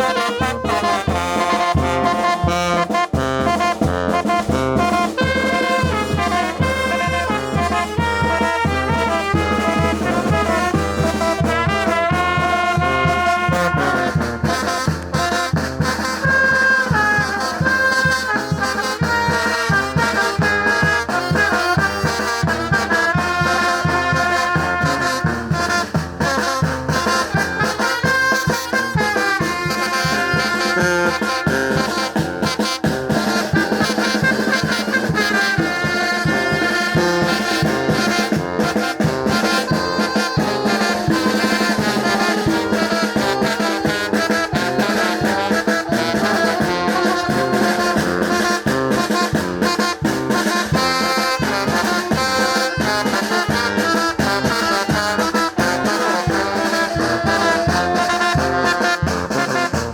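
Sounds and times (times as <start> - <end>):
steady percussion beat: 0.0 - 59.9
trumpets and trombones: 0.0 - 59.9.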